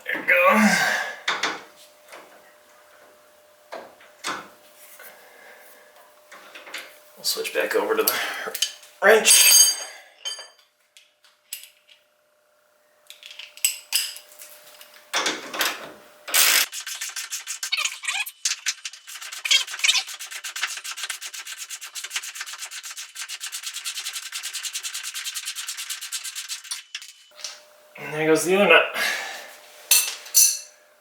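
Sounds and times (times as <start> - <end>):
metal tools clanking: 8.0 - 10.6, 29.9 - 30.7.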